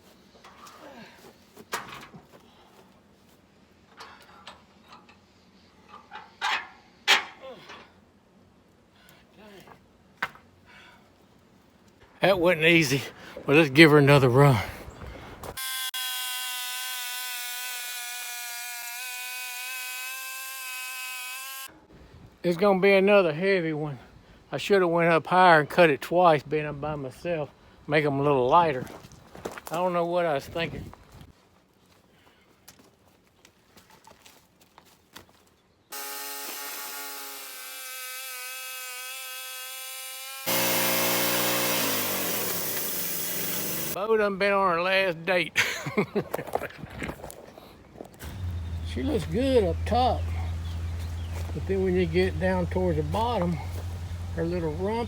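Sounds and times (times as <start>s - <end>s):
band sawmill cutting log: 15.6s - 21.7s, 35.9s - 44.0s, 48.2s - 55.0s
band sawmill whine: 40.5s - 44.0s, 48.2s - 55.0s.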